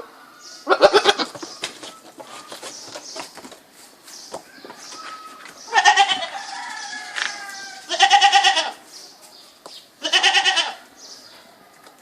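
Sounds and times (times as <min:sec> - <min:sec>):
goat bleating: 0:00.6 - 0:01.4, 0:04.7 - 0:06.4, 0:07.0 - 0:08.8, 0:10.0 - 0:10.9.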